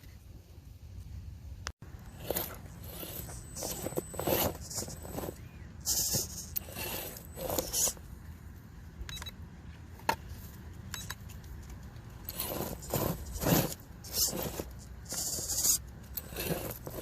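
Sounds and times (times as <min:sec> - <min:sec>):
toy car tyres scraping and crunching: 0:01.8 - 0:08.2, 0:10.0 - 0:17.0.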